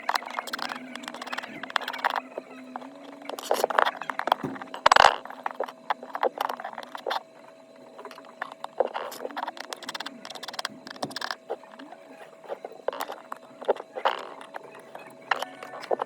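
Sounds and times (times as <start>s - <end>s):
faint steady hum: 0.0s - 16.0s
small tools clicking and scraping: 8.0s - 16.0s.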